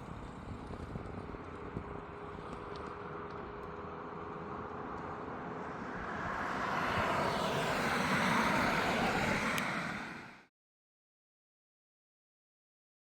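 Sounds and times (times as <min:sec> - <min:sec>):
tyres rushing on asphalt: 0:00.2 - 0:10.5.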